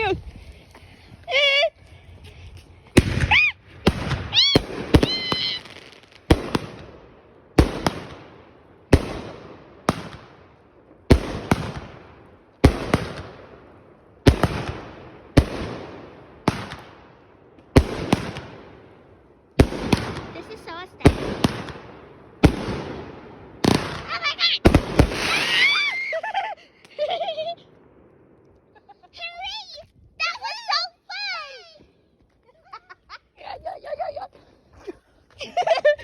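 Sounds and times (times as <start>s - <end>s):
rumble of fireworks: 1.9s - 30.7s
fireworks bangs: 3.0s - 19.0s, 19.6s - 29.4s.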